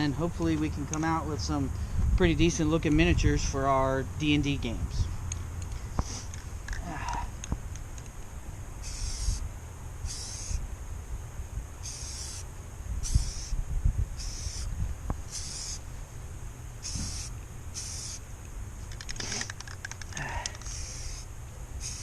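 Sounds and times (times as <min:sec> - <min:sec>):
aerosol spray bursts: 0:08.8 - 0:09.4, 0:11.8 - 0:12.4, 0:13.0 - 0:13.6, 0:14.2 - 0:14.7, 0:15.3 - 0:15.8, 0:16.8 - 0:18.2, 0:20.2 - 0:22.0.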